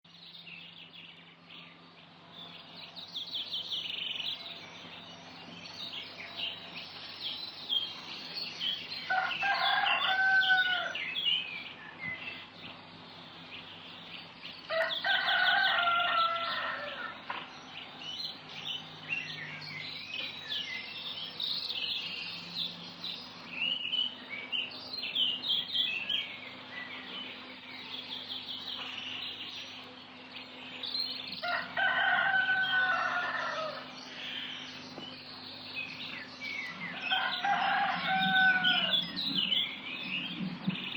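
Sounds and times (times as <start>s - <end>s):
small birds chirping: 0.1s - 40.9s
rooster crowing: 9.0s - 11.1s, 14.7s - 17.2s, 31.4s - 34.5s, 36.8s - 39.6s.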